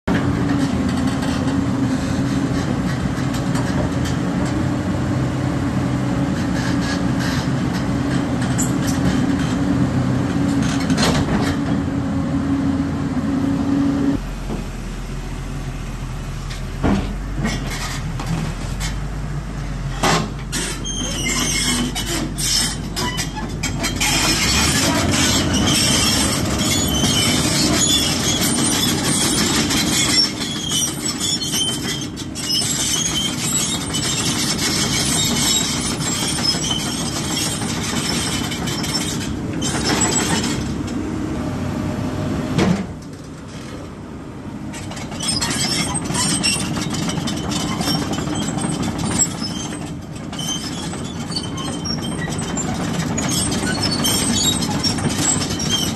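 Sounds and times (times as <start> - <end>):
excavator engine running: 0.1 - 55.9
metallic squeals and clanks: 0.4 - 4.2, 6.2 - 9.7, 10.4 - 11.8, 17.3 - 19.0, 19.9 - 41.0, 44.7 - 55.9.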